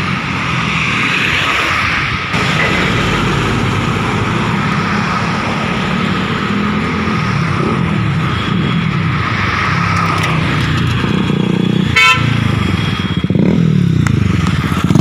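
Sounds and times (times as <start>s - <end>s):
road noise: 0.0s - 15.0s
motorcycle engine running: 10.0s - 15.0s.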